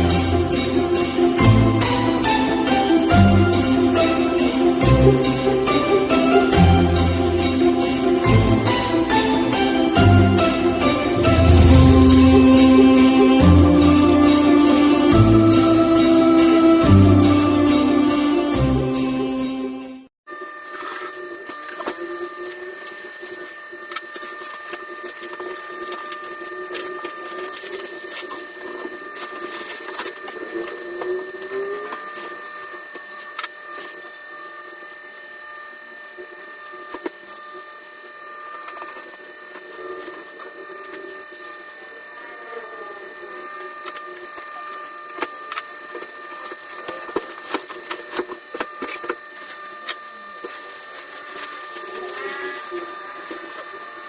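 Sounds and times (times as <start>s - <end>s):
faint high steady tones: 0.0s - 20.1s
faint high whine: 0.0s - 54.0s
mechanical whirring hum: 0.0s - 54.0s.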